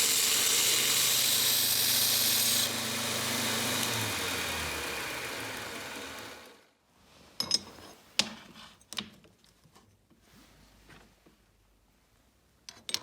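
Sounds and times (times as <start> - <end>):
power tool winding down: 0.0 - 6.6.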